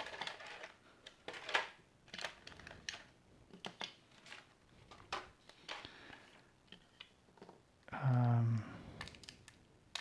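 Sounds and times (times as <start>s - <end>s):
plastic toy pieces clicking: 0.0s - 4.4s, 9.0s - 10.0s.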